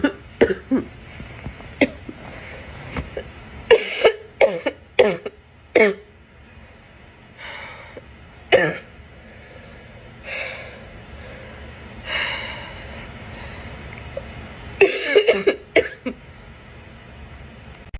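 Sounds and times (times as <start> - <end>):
noisy breathing: 0.9 - 3.2, 6.3 - 8.4, 9.0 - 14.4
person barking cough: 3.7 - 6.1, 8.5 - 8.9, 14.8 - 16.2.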